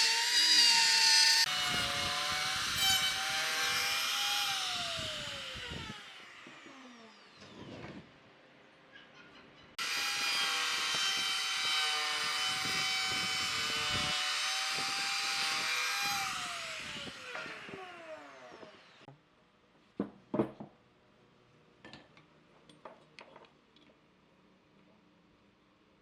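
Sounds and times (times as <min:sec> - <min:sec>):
power tool high whine: 0:00.0 - 0:08.0, 0:09.8 - 0:19.1.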